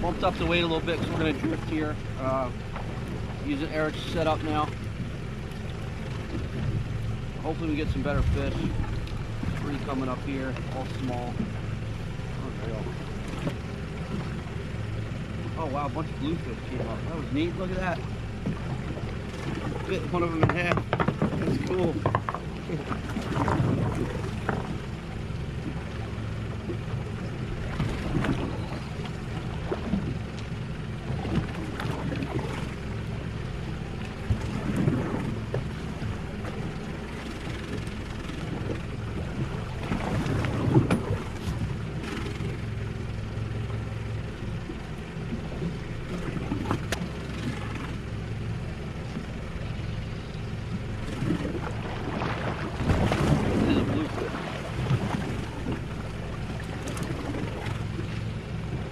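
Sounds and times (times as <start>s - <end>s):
boat diesel engine idling: 0.0s - 58.9s
sea noise: 0.0s - 58.9s
wind on microphone: 6.3s - 10.0s.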